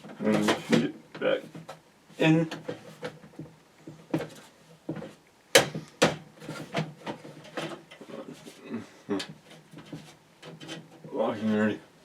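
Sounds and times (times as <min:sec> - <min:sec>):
sharp knocks: 0:04.9 - 0:06.3
clicks and scrapes of metal and plastic: 0:06.0 - 0:08.4, 0:09.2 - 0:11.1.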